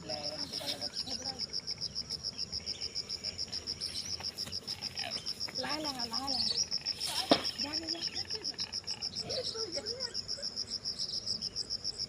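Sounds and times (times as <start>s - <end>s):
cricket-like insect chirping: 0.0s - 12.0s.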